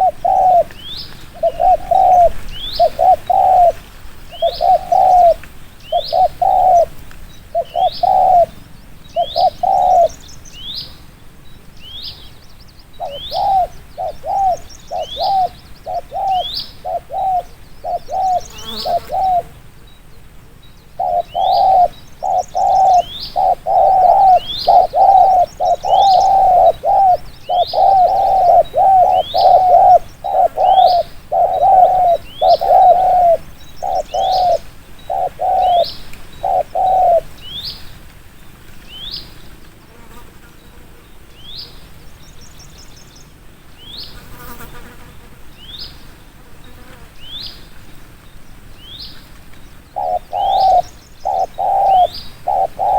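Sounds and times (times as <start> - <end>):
dove cooing rapidly: 0.0 - 10.2, 13.0 - 19.6, 21.0 - 37.6, 49.9 - 52.9
small bird chirping: 11.8 - 20.0, 20.8 - 37.8, 48.8 - 52.9.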